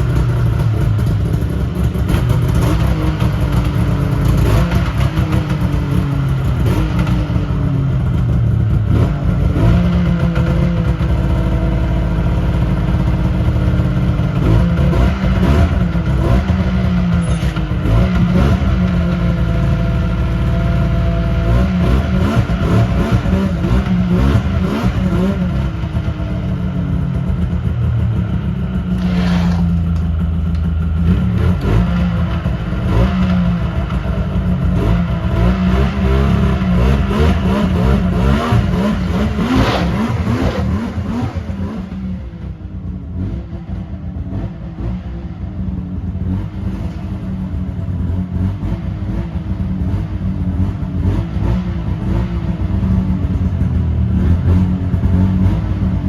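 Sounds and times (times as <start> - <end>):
snowmobile engine revving: 0.1 - 7.7, 21.3 - 26.0, 28.8 - 30.4, 31.0 - 42.4.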